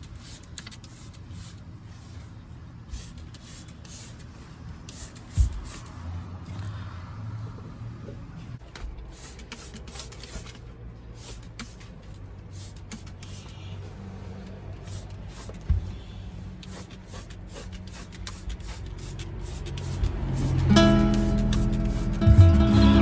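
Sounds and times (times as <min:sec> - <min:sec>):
thump: 0:05.4 - 0:05.7, 0:15.6 - 0:16.0.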